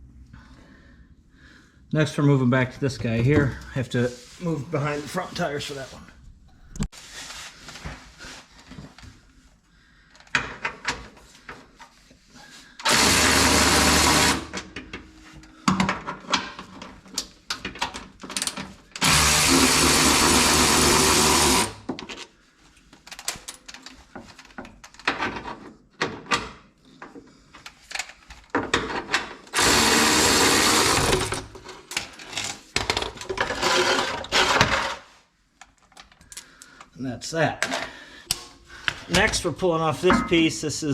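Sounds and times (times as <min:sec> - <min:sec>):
power tool spinning bolts: 0:12.8 - 0:14.6, 0:19.0 - 0:21.8, 0:29.5 - 0:31.5
clicks and clatter of handling: 0:35.6 - 0:36.9.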